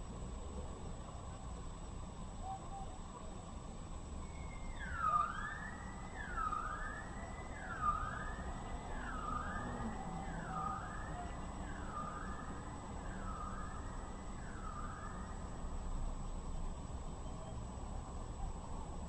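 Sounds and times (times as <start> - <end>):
low hum of street noise: 0.0 - 19.0
emergency vehicle siren wailing: 4.3 - 15.8.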